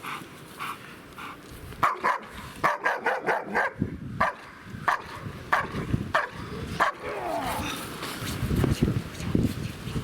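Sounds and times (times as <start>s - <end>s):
dog barking: 1.8s - 7.0s.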